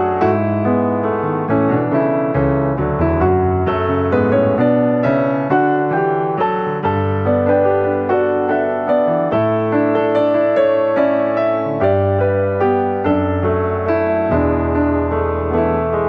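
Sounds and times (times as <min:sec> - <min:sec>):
gentle piano music: 0:00.0 - 0:16.0.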